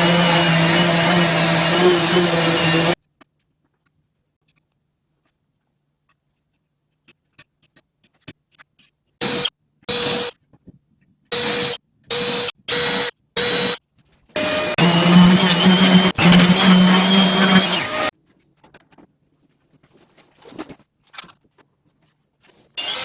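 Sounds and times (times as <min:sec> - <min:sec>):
electric power tool running: 0:00.0 - 0:03.0, 0:14.4 - 0:18.1, 0:22.8 - 0:23.0.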